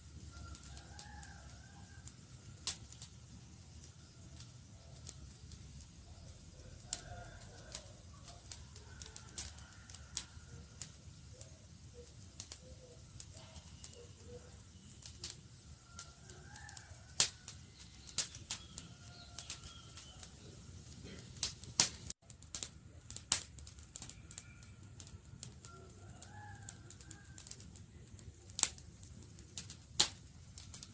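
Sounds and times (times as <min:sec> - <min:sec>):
campfire crackling and popping: 0:00.0 - 0:30.9
low rumble of flames: 0:00.0 - 0:30.9
faint wavering whistling tones: 0:03.2 - 0:21.2, 0:24.0 - 0:27.3.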